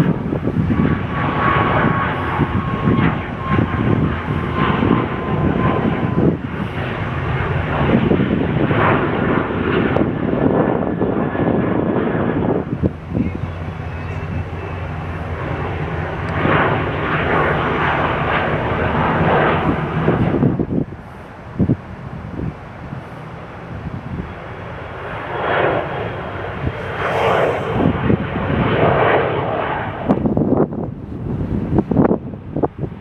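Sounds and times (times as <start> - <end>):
airliner engines roaring: 0.0 - 33.0
steady low hum: 26.7 - 28.6.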